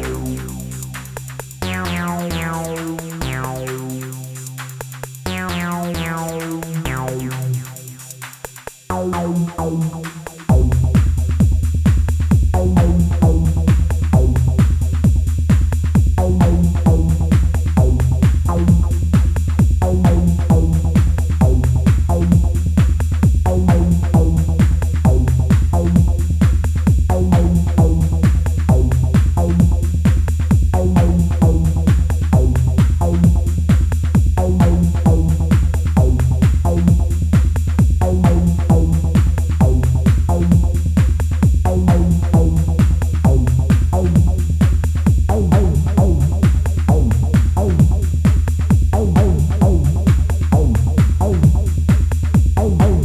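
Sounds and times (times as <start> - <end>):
drum machine techno: 0.0 - 53.0.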